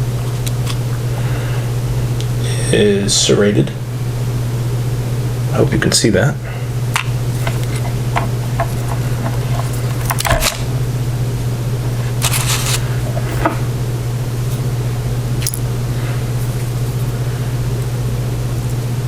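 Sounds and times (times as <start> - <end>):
light clicks of lock pins: 8.6 - 10.6, 15.4 - 15.7
brief metal scrape: 12.2 - 12.8.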